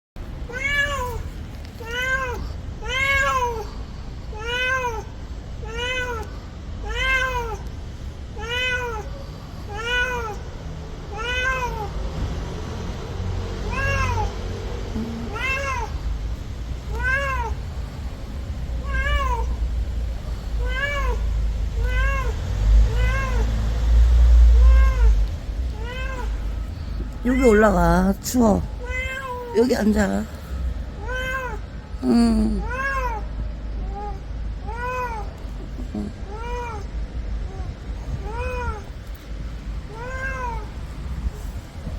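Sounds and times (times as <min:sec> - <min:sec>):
cat meowing: 0:00.5 - 0:07.7, 0:08.4 - 0:10.4, 0:11.1 - 0:11.9, 0:13.7 - 0:16.2, 0:16.9 - 0:17.7, 0:18.8 - 0:19.6, 0:20.6 - 0:23.6, 0:24.4 - 0:28.0, 0:28.6 - 0:30.3, 0:31.0 - 0:39.0, 0:39.9 - 0:41.5.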